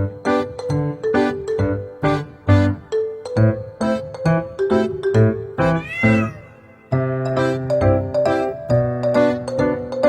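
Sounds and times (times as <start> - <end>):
keyboard tune: 4.0 - 8.7.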